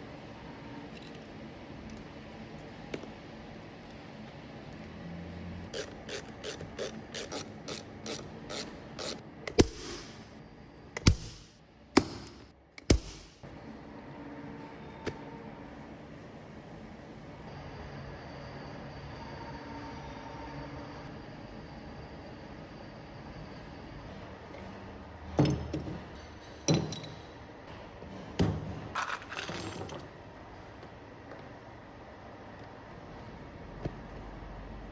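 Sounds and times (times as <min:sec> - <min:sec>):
metal parts knocking: 0:28.3 - 0:30.1
metal jangling rattle: 0:29.0 - 0:30.1.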